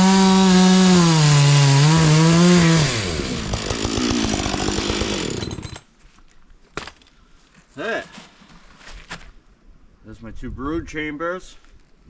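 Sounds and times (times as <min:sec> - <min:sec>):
chainsaw cutting log: 0:00.0 - 0:05.8.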